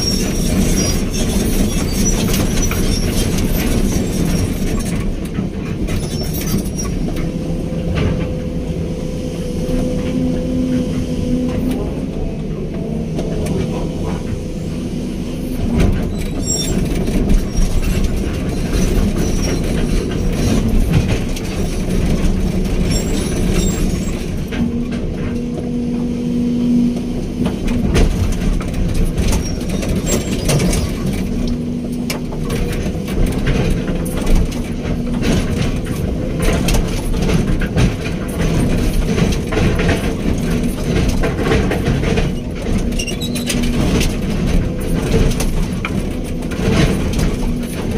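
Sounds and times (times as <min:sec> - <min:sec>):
diesel engine running: 0:00.0 - 0:47.9
metal clanks and knocks: 0:27.4 - 0:47.9.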